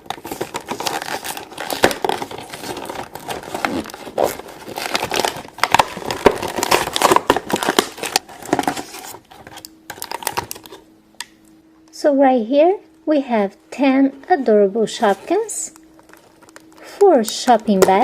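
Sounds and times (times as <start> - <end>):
packaging crinkling and tearing: 0.0 - 10.9, 15.0 - 18.0.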